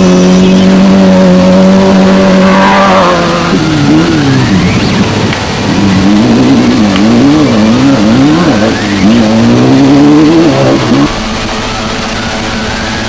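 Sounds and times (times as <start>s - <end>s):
race car engine revving: 0.0s - 13.0s.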